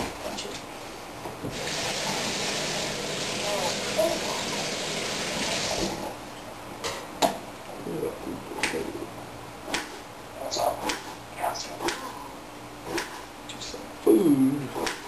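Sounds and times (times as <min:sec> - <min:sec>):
water running from a tap: 0:01.5 - 0:06.0.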